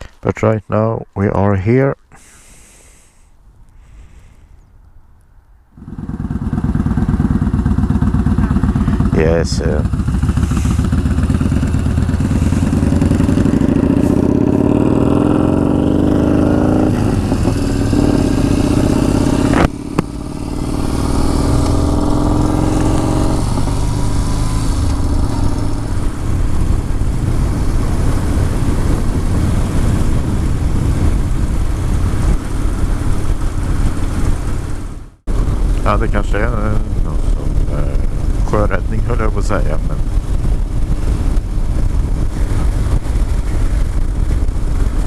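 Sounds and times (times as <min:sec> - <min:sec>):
motorcycle engine accelerating: 0:05.8 - 0:45.0
wind rush: 0:05.8 - 0:45.0.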